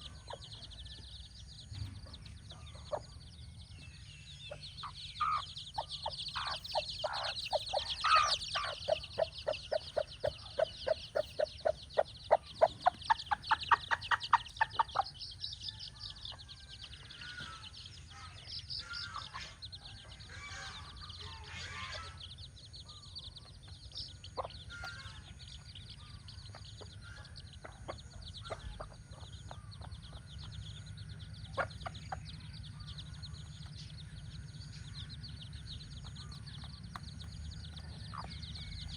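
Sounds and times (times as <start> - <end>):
chicks peeping: 0.0 - 38.9
hen clucking: 4.5 - 15.6, 26.5 - 30.4.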